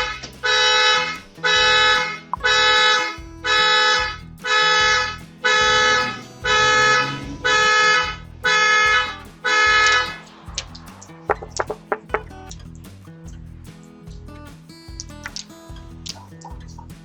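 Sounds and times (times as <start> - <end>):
car horn honking alarm: 4.6 - 9.0.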